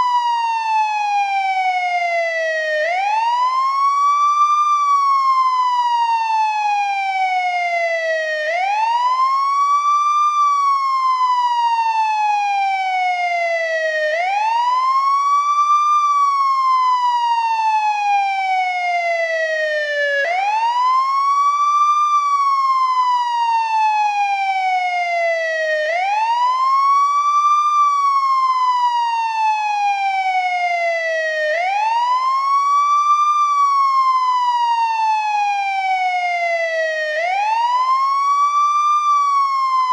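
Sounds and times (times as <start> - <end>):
ambulance siren wailing: 0.0 - 39.9.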